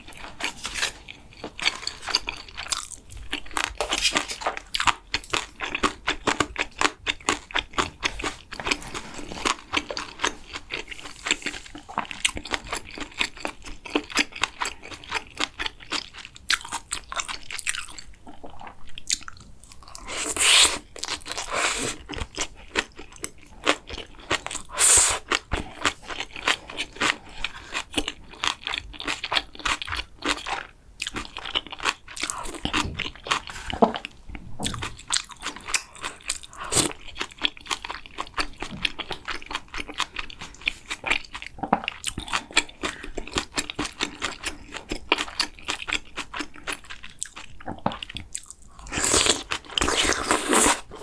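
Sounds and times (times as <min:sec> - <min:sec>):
chewing with crunches: 0:00.0 - 0:51.0.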